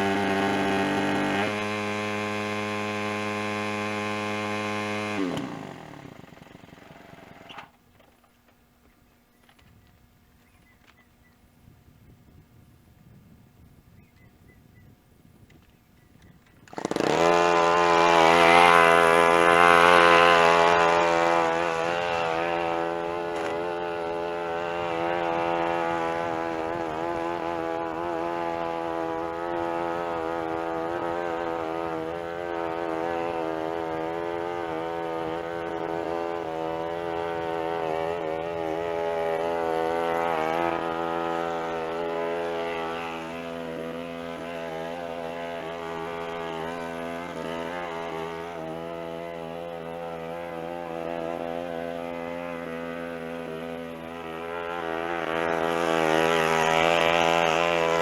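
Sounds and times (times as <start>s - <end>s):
push mower engine running: 0.0s - 8.2s, 16.4s - 58.0s.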